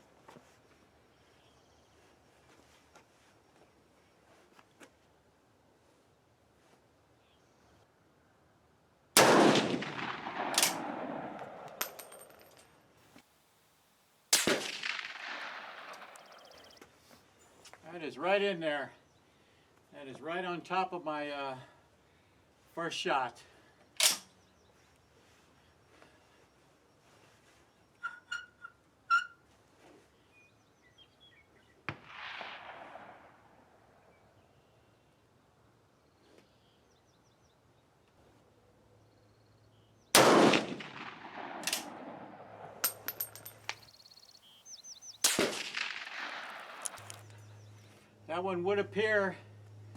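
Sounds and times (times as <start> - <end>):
rifle shots with echo: 9.2 - 12.5, 14.3 - 16.8, 31.9 - 34.0, 40.1 - 43.7, 45.2 - 47.2
sharp crack with hiss: 14.3 - 16.4, 45.2 - 47.3
small birds chirping: 15.8 - 17.6, 43.6 - 45.3, 46.3 - 48.1
sharp metallic clicks: 45.2 - 47.4.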